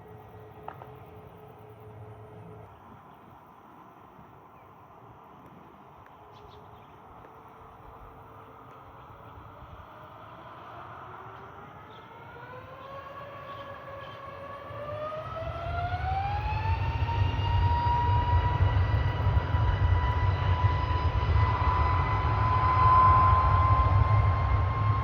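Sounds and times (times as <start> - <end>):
jet engines spooling up: 8.0 - 25.0.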